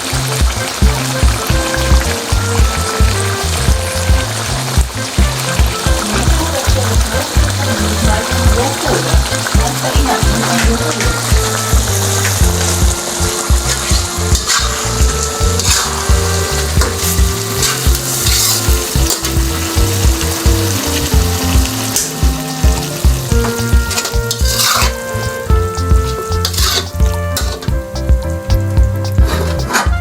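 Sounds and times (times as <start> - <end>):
chicken sizzling in a pan: 0.0 - 25.4
background music: 0.0 - 30.0
spoon scraping pan: 13.8 - 19.3.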